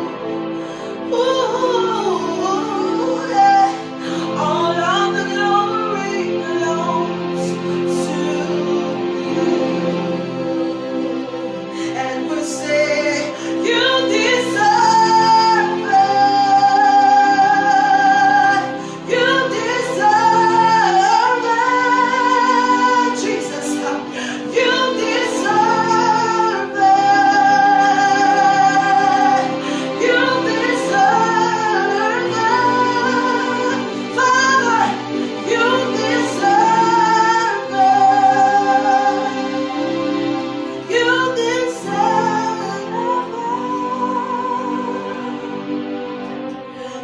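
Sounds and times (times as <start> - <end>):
woman singing with vibrato: 0.0 - 11.0, 11.7 - 47.0
sustained accompaniment chords: 0.0 - 47.0.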